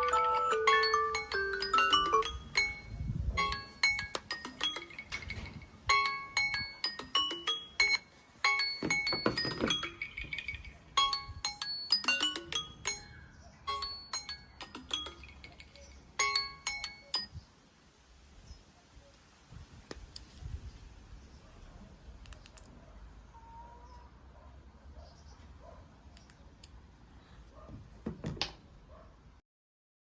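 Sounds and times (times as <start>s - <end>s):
knock: 28.0s - 28.5s.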